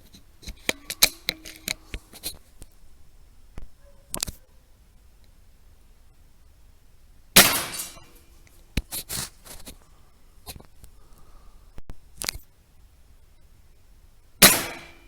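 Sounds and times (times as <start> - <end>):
sharp clicks and knocks: 0.0 - 2.8
rifle shot: 7.4 - 8.0, 14.4 - 15.0.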